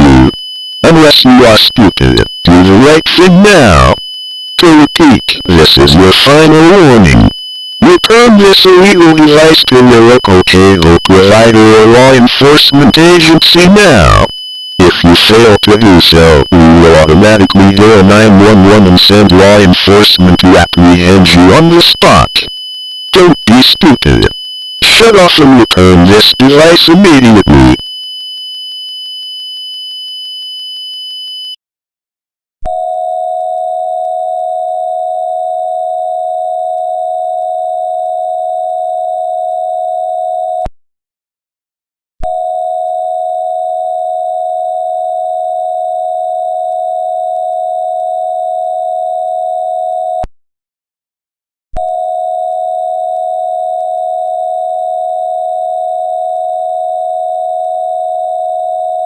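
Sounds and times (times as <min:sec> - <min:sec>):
high-pitched electronic tone: 0:04.6 - 0:22.5, 0:23.2 - 0:27.9.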